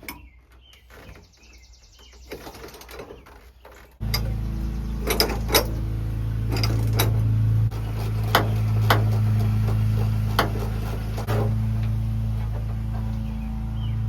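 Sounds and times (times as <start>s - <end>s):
steady low hum: 4.0s - 14.0s.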